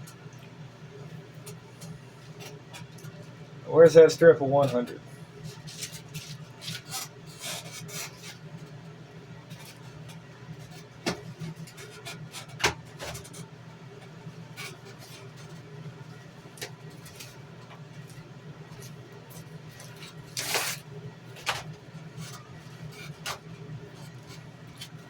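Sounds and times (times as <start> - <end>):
steady low hum: 0.0 - 25.0
rustling of objects: 14.5 - 25.0.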